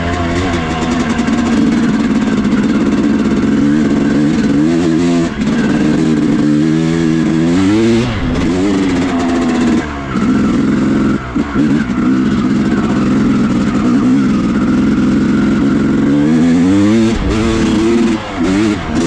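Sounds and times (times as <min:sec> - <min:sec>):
two-stroke motorcycle engine revving: 0:00.0 - 0:19.0.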